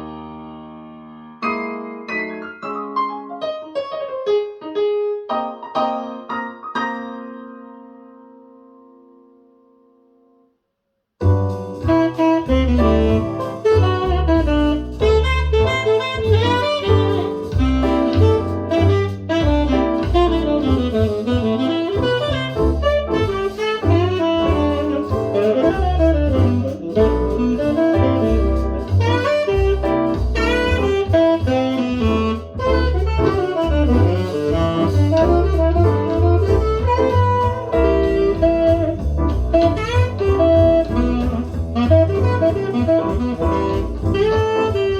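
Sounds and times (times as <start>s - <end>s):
jazz music with saxophone: 11.2s - 44.9s.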